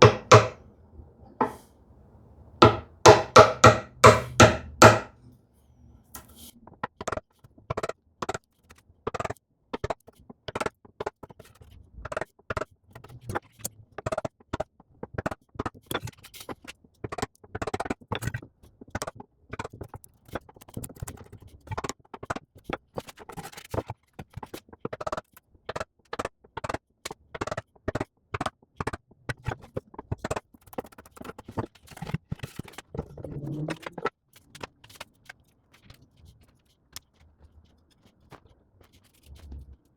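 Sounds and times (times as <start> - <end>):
hand tools scraping and tapping wood: 0.0 - 0.6, 1.3 - 1.7, 2.6 - 5.2.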